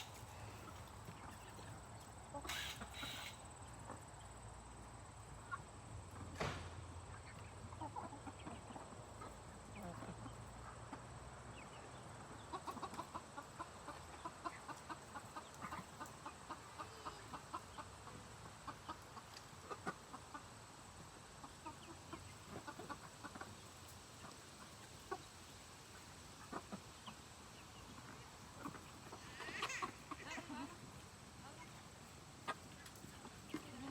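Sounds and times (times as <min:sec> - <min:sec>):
chickens clucking: 0:00.0 - 0:33.9
chickens pecking clicks: 0:12.5 - 0:16.6, 0:18.7 - 0:20.0, 0:32.4 - 0:33.9.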